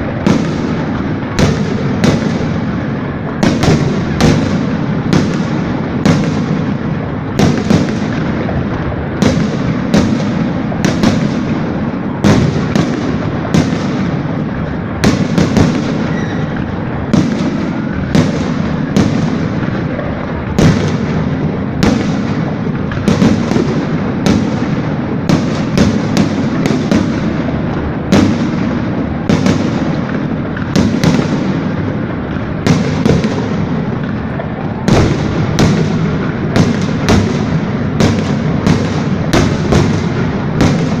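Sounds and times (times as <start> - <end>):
firework bangs: 0.0 - 41.0
crackle of bursting shells: 34.9 - 41.0.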